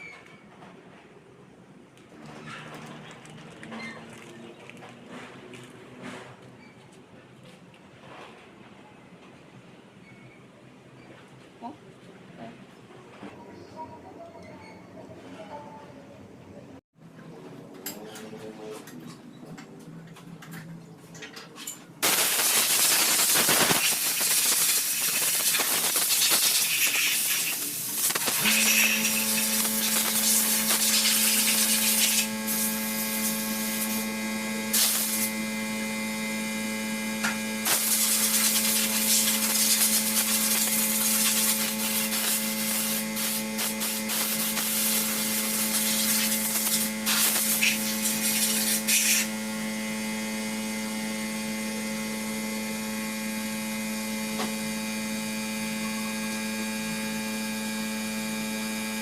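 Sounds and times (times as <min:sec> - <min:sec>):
steady machine hum: 0:22.0 - 0:59.0.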